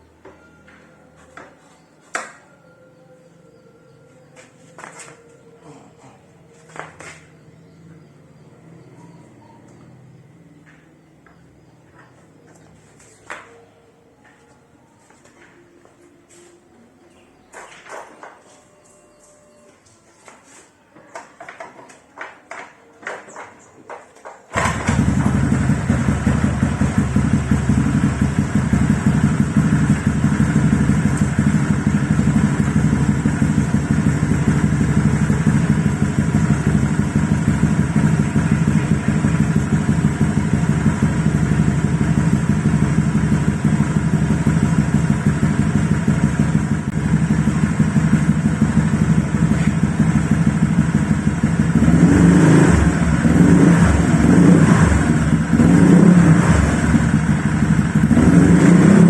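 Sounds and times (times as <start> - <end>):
motorcycle engine idling: 24.5 - 59.0
motorcycle throttle blips: 24.5 - 59.0.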